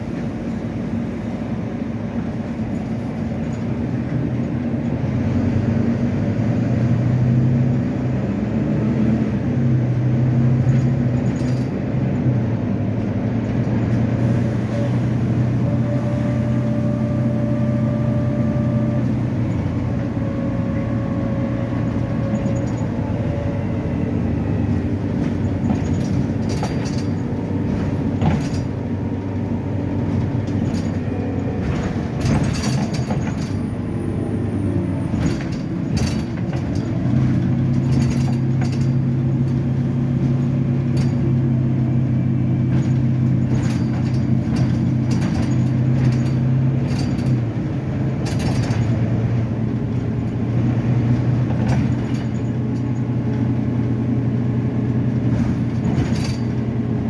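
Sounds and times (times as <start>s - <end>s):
bus diesel engine droning: 0.0s - 57.0s
short knocks and rattles: 24.6s - 33.7s, 35.1s - 57.0s.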